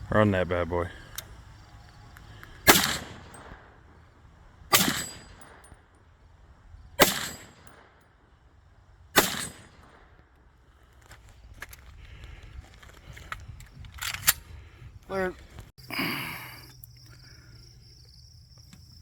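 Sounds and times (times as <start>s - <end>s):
rifle shots: 2.6s - 3.9s, 4.7s - 5.8s, 7.0s - 8.0s, 9.1s - 10.2s.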